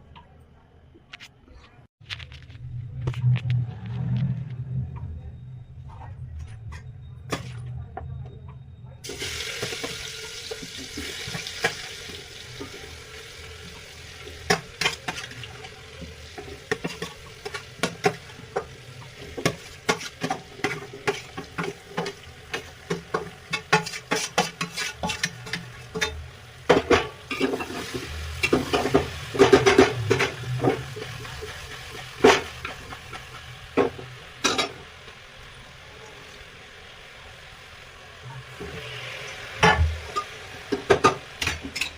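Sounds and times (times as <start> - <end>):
food sizzling in a pan: 9.0 - 41.9
spoon scraping a pan: 19.3 - 30.8.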